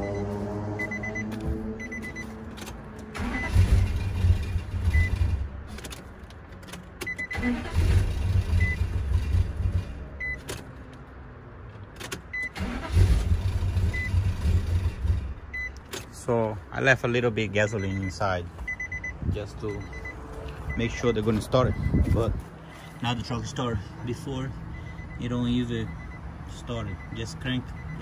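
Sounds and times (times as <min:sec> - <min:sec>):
warning chime beeping: 0:00.0 - 0:02.4, 0:17.6 - 0:22.4, 0:23.0 - 0:28.0
engine cranking: 0:02.5 - 0:10.6, 0:12.0 - 0:16.0.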